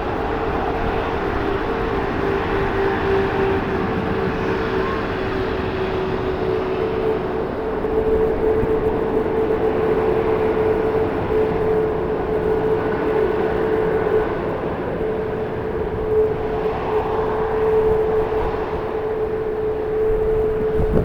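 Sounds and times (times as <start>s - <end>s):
jet engines roaring: 0.0s - 21.0s.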